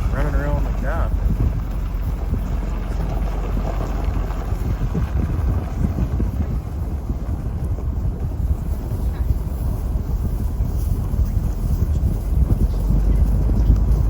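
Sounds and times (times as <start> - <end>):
vehicle driving rumble: 0.0 - 14.0
wind buffeting microphone: 0.0 - 14.0.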